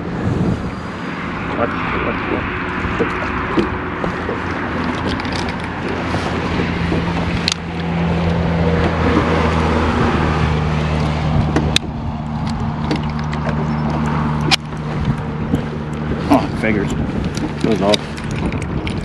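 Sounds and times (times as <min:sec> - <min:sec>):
boat motor running: 0:00.0 - 0:19.0
water noise: 0:00.0 - 0:19.0
wind noise: 0:00.0 - 0:19.0
sharp clicks: 0:11.5 - 0:16.1.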